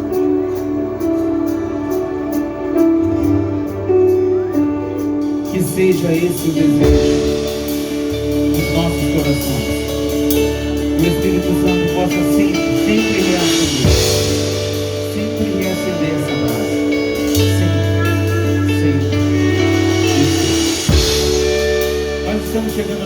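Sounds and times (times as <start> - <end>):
guitar sustained chords: 0.0 - 23.0
long bass notes: 0.0 - 23.0.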